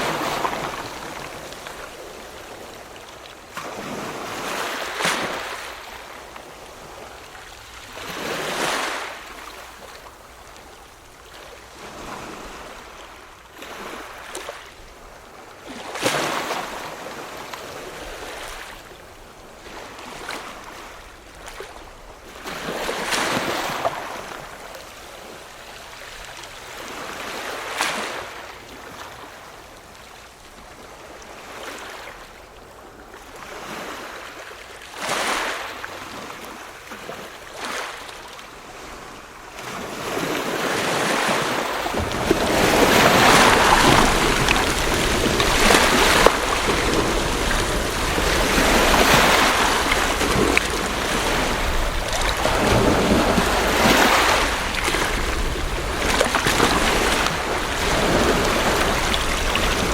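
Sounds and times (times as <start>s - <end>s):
ocean waves washing in: 0.0s - 15.1s, 38.6s - 59.9s
low rumble of surf: 0.0s - 34.9s, 35.6s - 59.9s.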